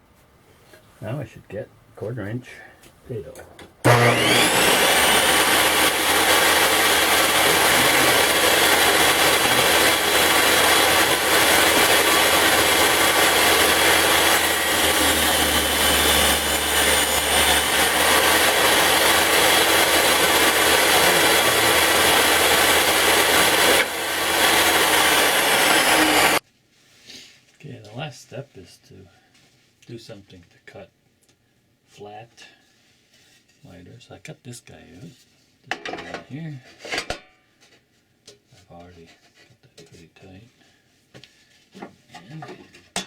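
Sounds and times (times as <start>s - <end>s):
table saw whining cutting wood: 3.8s - 26.4s.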